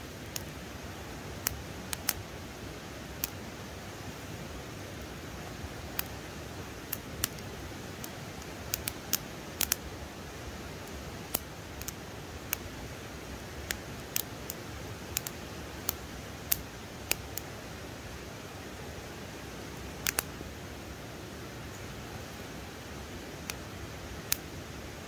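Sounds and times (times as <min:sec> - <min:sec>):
sharp clicks: 0:01.4 - 0:02.2, 0:08.0 - 0:09.8, 0:13.6 - 0:17.5, 0:20.0 - 0:20.3.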